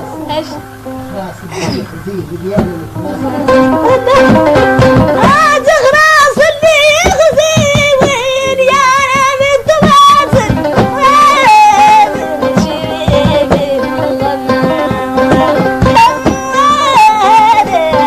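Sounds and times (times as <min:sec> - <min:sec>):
person singing with vibrato: 0:00.0 - 0:02.0, 0:02.9 - 0:18.0
plucked strings: 0:00.0 - 0:18.0
rhythmic pulse: 0:00.0 - 0:18.0.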